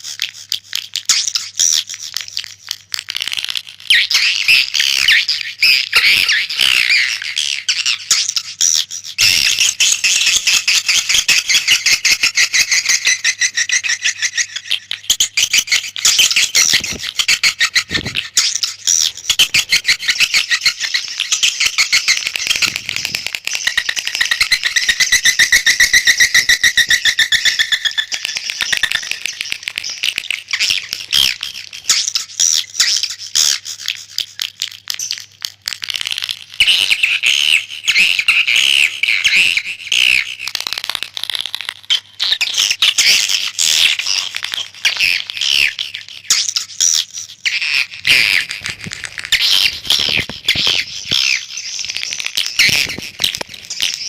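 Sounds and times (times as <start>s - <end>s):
swiftlets chirping and twittering: 3.9s - 35.3s, 42.2s - 54.0s.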